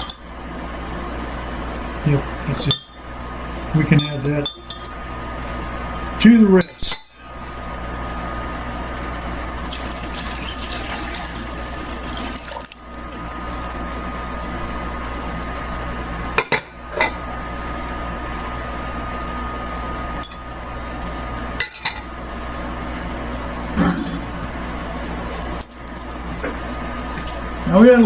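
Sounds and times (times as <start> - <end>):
running water: 9.4 - 13.9.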